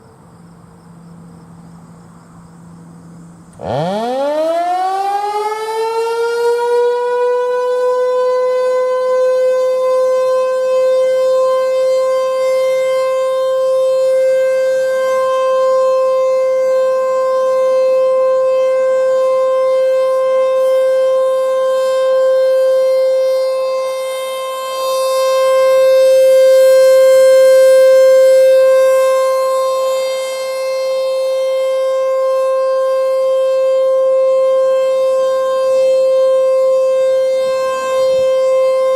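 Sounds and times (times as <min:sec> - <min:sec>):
mechanical siren winding up: 0:03.5 - 0:04.2.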